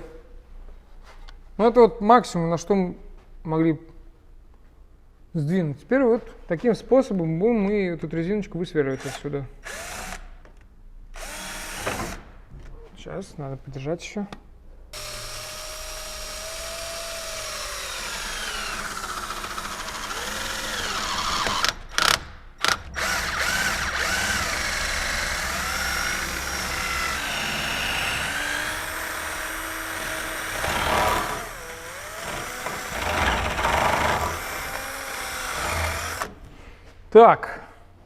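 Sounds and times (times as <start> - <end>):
power drill boring into rubber: 9.0 - 10.2, 11.2 - 12.2, 15.0 - 36.3.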